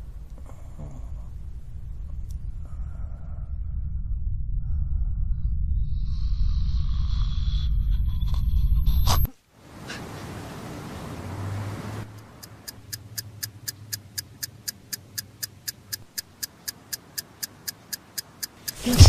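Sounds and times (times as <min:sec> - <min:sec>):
clock ticking quickly: 0:12.1 - 0:19.0.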